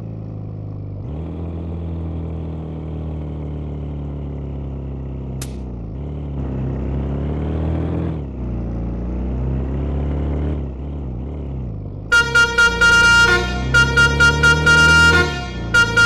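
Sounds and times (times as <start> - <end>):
bus engine running: 0.0 - 16.0
multi-tone bus horn: 12.1 - 16.0.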